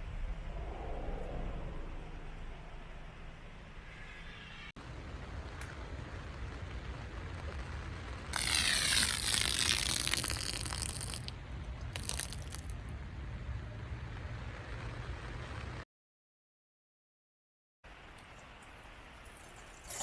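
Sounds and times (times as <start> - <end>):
steady low rumble: 0.0 - 8.4, 10.7 - 15.8
rasping ratchet-like mechanical sound: 8.4 - 10.2.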